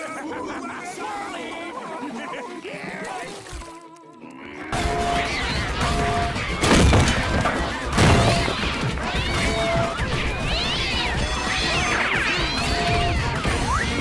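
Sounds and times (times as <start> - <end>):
background music: 0.0 - 14.0
squeals and yowls: 4.4 - 14.0
cartoon crash: 4.8 - 9.8.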